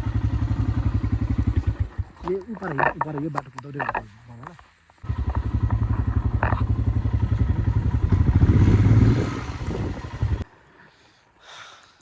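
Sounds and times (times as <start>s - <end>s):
motorcycle engine under load: 0.0s - 4.1s, 5.0s - 10.4s.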